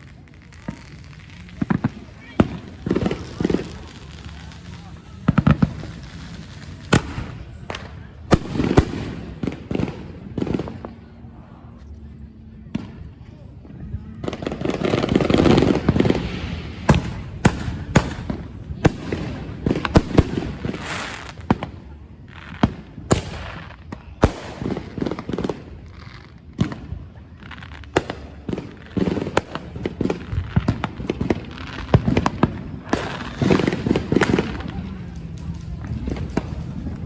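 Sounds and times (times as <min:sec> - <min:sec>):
fireworks bangs and crackles: 0:00.0 - 0:37.0
fireworks rumbling burst: 0:00.0 - 0:37.0.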